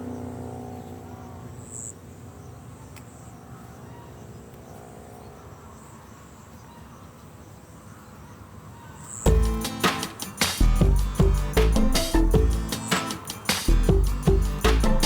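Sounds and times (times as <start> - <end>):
insects chirping: 1.3 - 3.8, 9.0 - 15.0.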